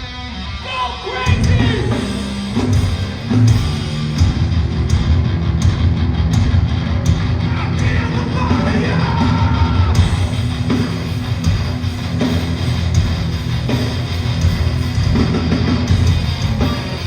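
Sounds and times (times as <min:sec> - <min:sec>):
bass guitar: 0:00.0 - 0:17.0
distorted electric guitars: 0:00.0 - 0:17.0
drums: 0:00.0 - 0:17.0
shouted vocals: 0:00.6 - 0:02.2, 0:07.4 - 0:10.1.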